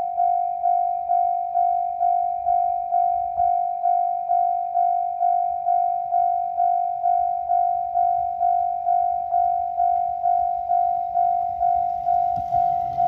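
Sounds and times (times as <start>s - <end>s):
railroad crossing alarm dinging: 0.0s - 13.0s.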